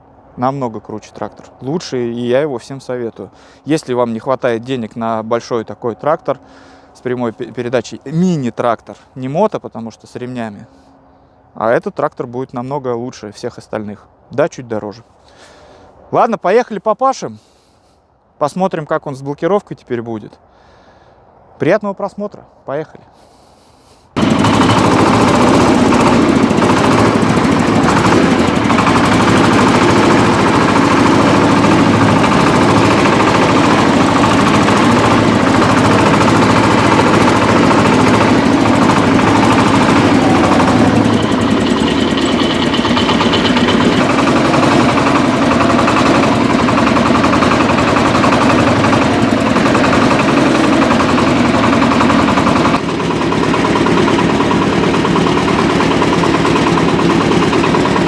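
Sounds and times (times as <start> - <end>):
tractor diesel engine knocking: 24.2 - 58.0.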